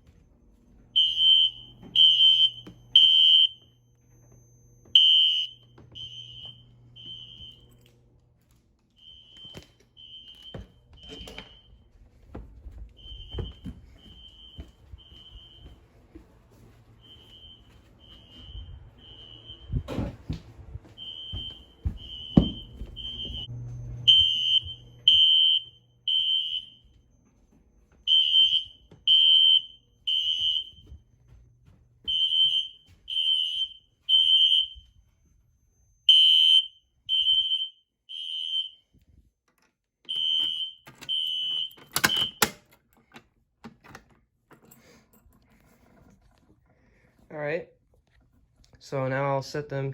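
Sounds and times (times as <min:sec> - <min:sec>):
fire alarm horn beeps: 0:00.9 - 0:08.0, 0:08.9 - 0:12.0, 0:13.0 - 0:15.8, 0:17.0 - 0:20.1, 0:20.9 - 0:39.0, 0:40.1 - 0:42.6.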